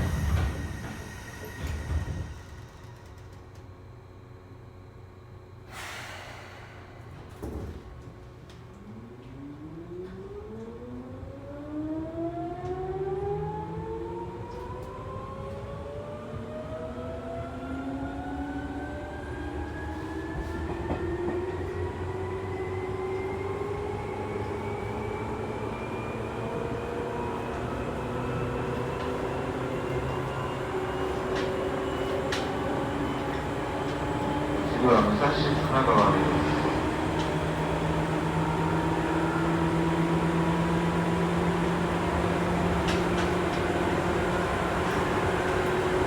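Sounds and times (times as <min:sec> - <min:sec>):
wheels rumbling on rail: 0:00.0 - 0:03.7, 0:14.2 - 0:46.0
train motor whine rising: 0:08.8 - 0:46.0.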